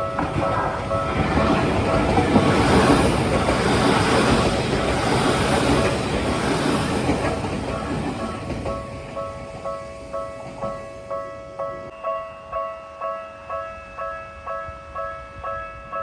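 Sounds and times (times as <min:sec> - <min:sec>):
electric train passing: 0:00.0 - 0:16.0.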